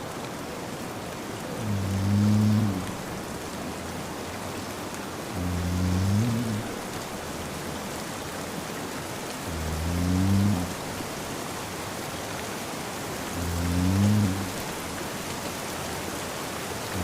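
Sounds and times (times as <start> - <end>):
steady rain: 0.0 - 17.0
man snoring: 1.6 - 3.1, 5.3 - 6.9, 9.5 - 11.1, 13.3 - 14.7.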